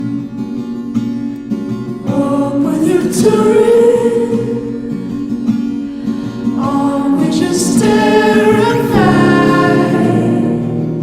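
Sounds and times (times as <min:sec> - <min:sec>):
song with sung vocals: 0:02.0 - 0:05.0, 0:06.2 - 0:11.0.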